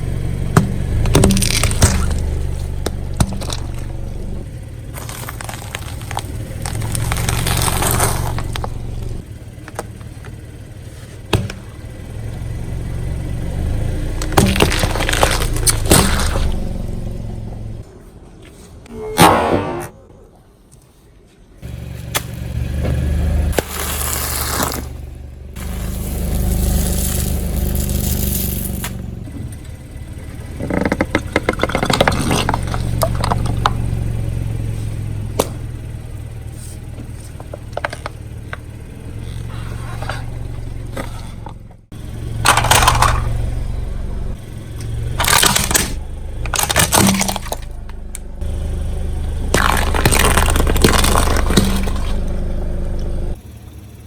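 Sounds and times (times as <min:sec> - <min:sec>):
tyre crunching brittle objects: 0:00.0 - 0:10.4, 0:14.2 - 0:16.8, 0:21.6 - 0:29.6, 0:30.6 - 0:35.7, 0:36.4 - 0:43.6, 0:44.8 - 0:52.4
car engine running: 0:00.0 - 0:18.0, 0:21.6 - 0:54.0.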